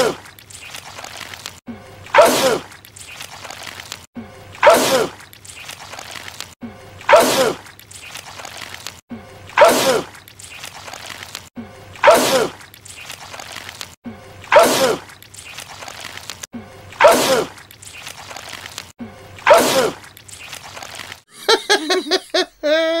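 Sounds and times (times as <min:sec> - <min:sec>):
man sneezing: 0:02.2 - 0:02.7, 0:09.6 - 0:10.1, 0:14.5 - 0:15.0, 0:17.0 - 0:17.5, 0:19.5 - 0:20.0.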